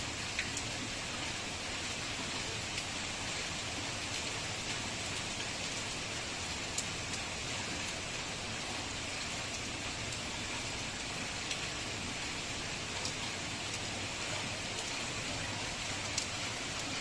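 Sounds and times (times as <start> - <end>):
heavy rain hissing: 0.0 - 17.0
raindrop ticks: 0.3 - 0.8, 2.7 - 2.9, 11.4 - 11.8, 13.0 - 13.9, 16.0 - 17.0.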